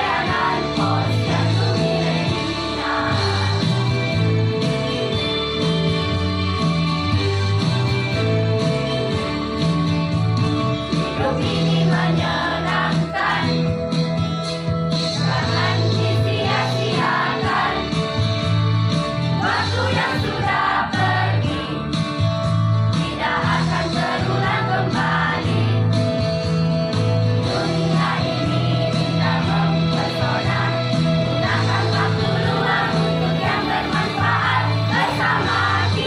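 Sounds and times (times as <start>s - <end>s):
choir singing: 0.0s - 3.9s, 11.2s - 13.7s, 15.2s - 17.9s, 19.4s - 21.8s, 23.1s - 25.8s, 27.5s - 36.0s
instrumental backing with bass line: 0.0s - 36.0s.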